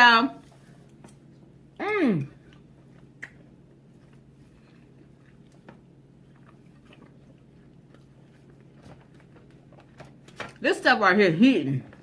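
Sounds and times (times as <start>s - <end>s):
low steady hum: 0.0s - 12.0s
person chewing: 0.7s - 10.3s.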